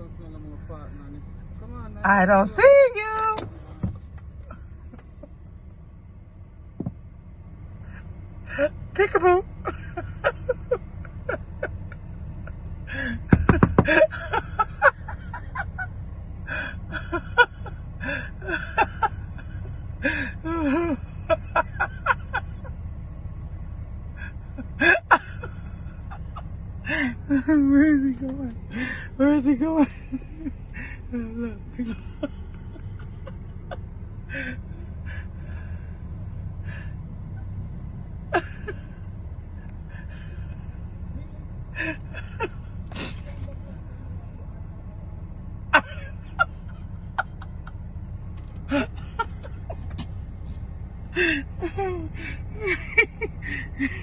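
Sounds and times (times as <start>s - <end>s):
steady low rumble: 0.0s - 54.0s
woman giggling and laughing: 8.5s - 15.9s, 29.6s - 34.6s, 48.6s - 50.2s, 51.1s - 54.0s.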